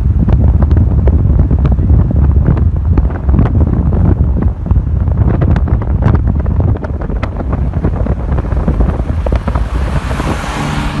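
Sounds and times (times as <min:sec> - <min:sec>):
car engine running: 0:00.0 - 0:11.0
wind buffeting microphone: 0:00.0 - 0:11.0.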